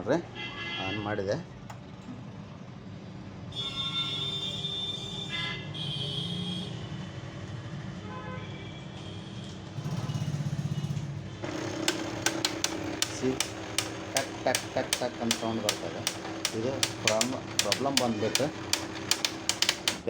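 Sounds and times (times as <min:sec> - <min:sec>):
low grinding rattle: 0:11.4 - 0:20.0
printer motor whirring and whining: 0:11.4 - 0:20.0.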